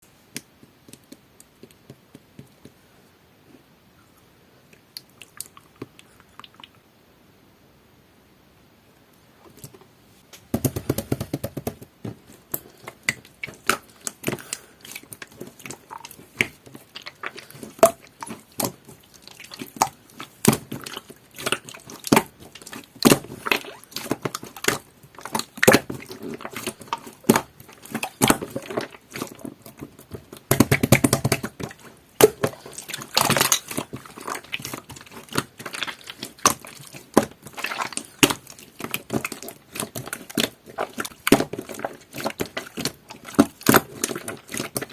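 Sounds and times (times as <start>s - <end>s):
slime squishing by hand: 9.5s - 44.9s.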